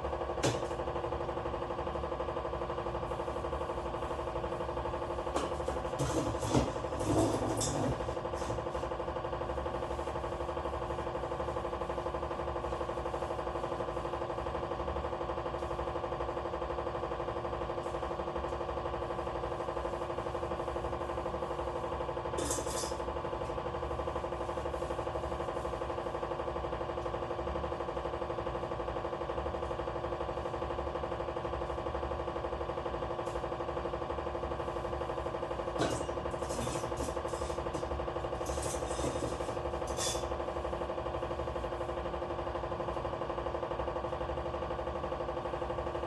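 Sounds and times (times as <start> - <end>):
steady multi-pitch hum: 0.0 - 6.6.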